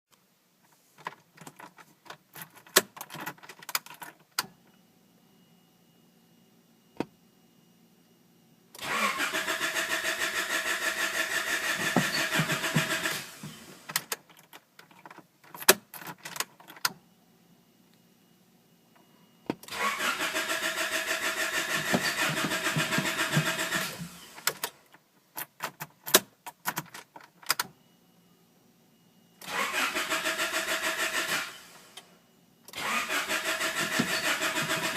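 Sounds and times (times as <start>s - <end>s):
faint steady high tone: 4.4s - 8.8s, 16.8s - 19.7s, 27.7s - 29.4s, 31.5s - 32.7s
engine cranking on starter: 8.8s - 13.9s, 19.7s - 24.7s, 29.4s - 32.0s, 32.7s - 34.9s.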